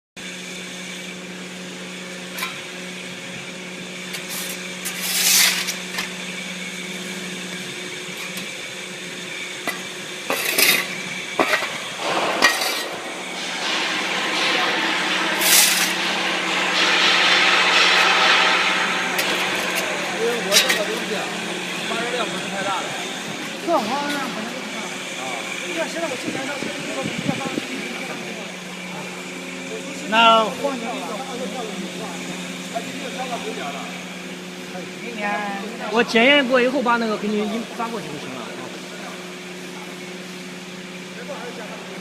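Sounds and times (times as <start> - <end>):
machinery humming: 0.2 - 42.0
short hissing or scraping bursts: 4.2 - 5.8
broad rushing noise: 10.3 - 33.2.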